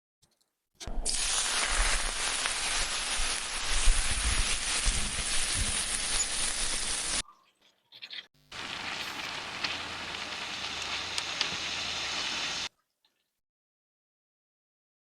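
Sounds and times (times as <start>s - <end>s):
food sizzling in hot oil: 1.0s - 7.2s, 8.5s - 12.7s
oil popping: 8.5s - 12.7s.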